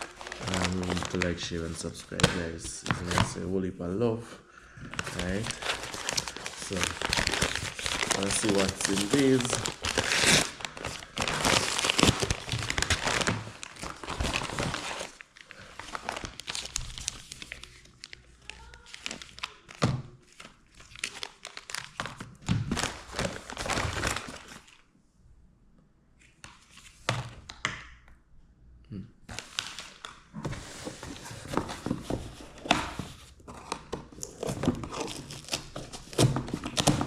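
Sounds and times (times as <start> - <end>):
packaging torn and crinkled: 0.0 - 1.4, 5.0 - 24.7.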